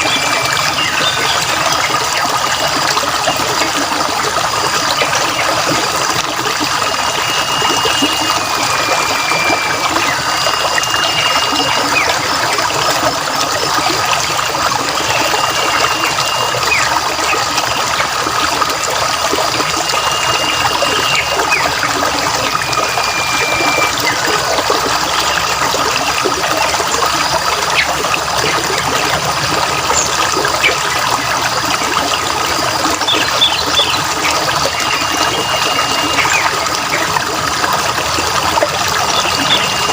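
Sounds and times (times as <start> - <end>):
running water trickling: 0.0 - 39.9
bird whistling: 6.8 - 12.3, 15.0 - 16.9, 19.9 - 24.2, 33.0 - 37.0, 39.0 - 39.9.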